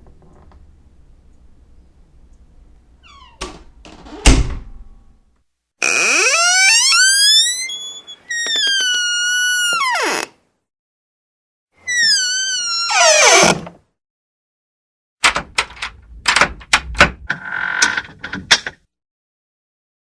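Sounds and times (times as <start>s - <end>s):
door hinges squeaking: 3.0s - 4.2s, 5.8s - 10.3s, 11.8s - 13.8s.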